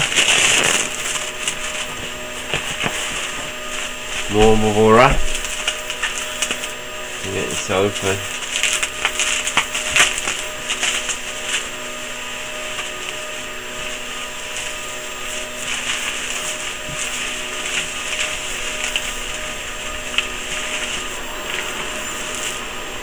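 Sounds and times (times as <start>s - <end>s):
bubble wrap rustling and crinkling: 0.0s - 23.0s
steady low hum: 0.0s - 23.0s.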